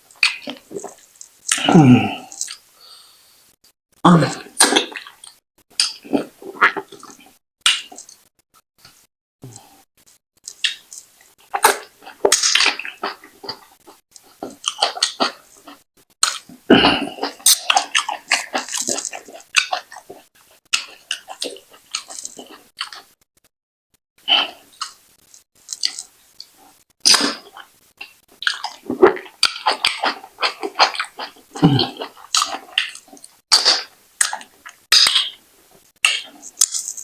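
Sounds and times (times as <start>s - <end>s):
wet chewing and slurping: 0.1s - 2.7s, 4.1s - 9.8s, 10.4s - 23.2s, 24.3s - 37.0s.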